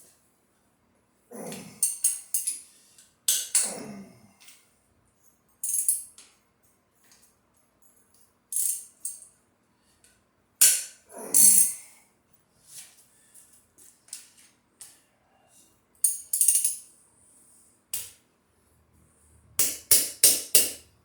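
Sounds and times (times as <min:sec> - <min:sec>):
metal tools clinking and rattling: 0:08.6 - 0:09.3, 0:16.1 - 0:16.8.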